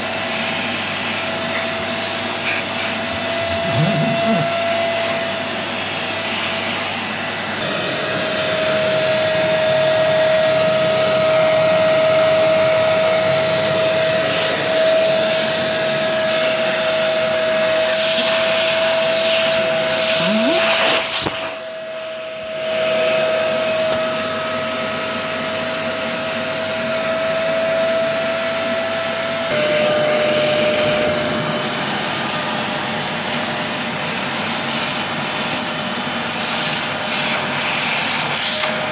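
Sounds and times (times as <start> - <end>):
shop vacuum motor whine: 0.0 - 38.9.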